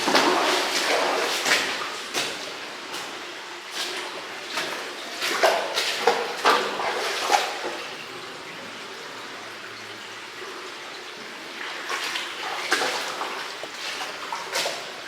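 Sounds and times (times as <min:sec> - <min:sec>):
scuffing and splashing: 0:00.0 - 0:07.9, 0:11.8 - 0:15.0
water rushing in a cave: 0:00.0 - 0:15.0.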